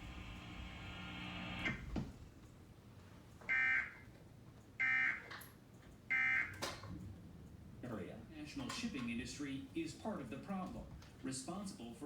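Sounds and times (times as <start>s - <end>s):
steady hum: 0.0s - 2.0s.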